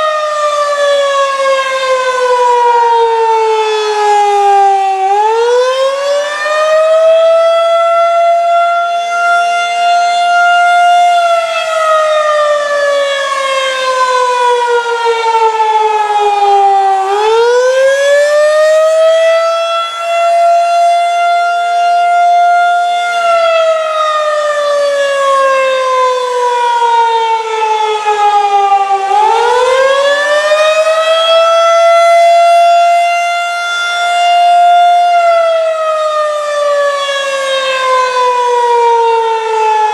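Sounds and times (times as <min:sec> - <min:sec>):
tornado siren wailing: 0:00.0 - 0:39.9.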